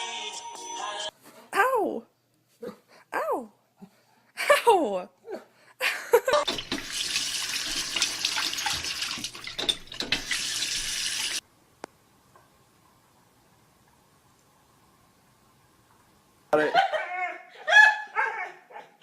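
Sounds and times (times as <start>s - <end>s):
water running from a tap: 6.4s - 11.4s.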